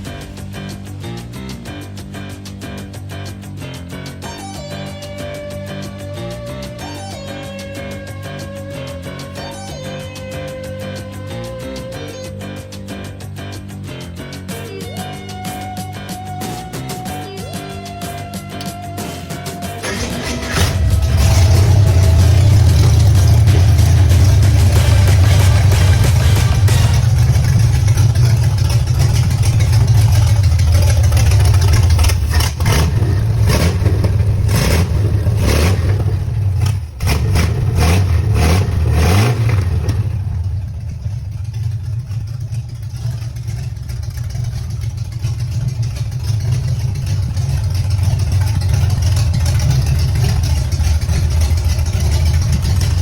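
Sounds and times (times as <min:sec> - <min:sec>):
car engine idling and revving: 0:00.0 - 0:14.8, 0:15.5 - 0:53.0.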